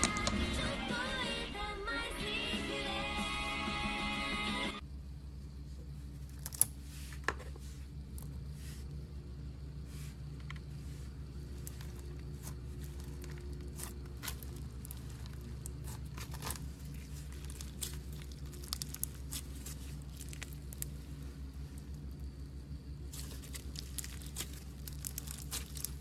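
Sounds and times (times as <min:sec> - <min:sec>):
steady low hum: 0:00.0 - 0:26.0
slime crackling and popping: 0:11.6 - 0:21.0, 0:23.1 - 0:26.0.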